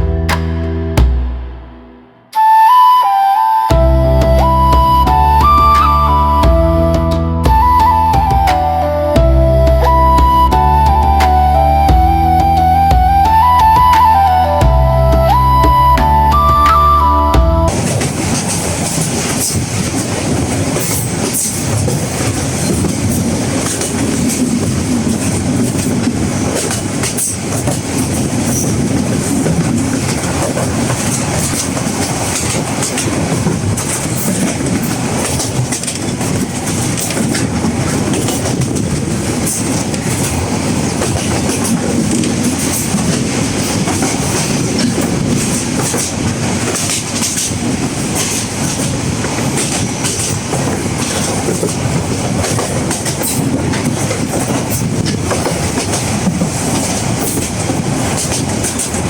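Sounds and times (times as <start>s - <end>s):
train wheels rumbling: 2.4s - 59.0s
clicks and clatters from track: 17.7s - 59.0s.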